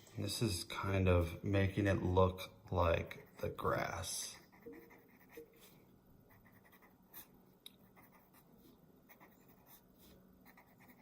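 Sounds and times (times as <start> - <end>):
drawing tool scratching on paper: 9.1 - 11.0.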